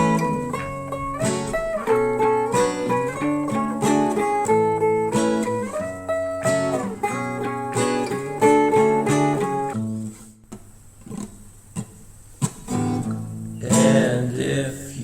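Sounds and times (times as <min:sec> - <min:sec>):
acoustic guitar strumming chords: 0:00.0 - 0:15.0.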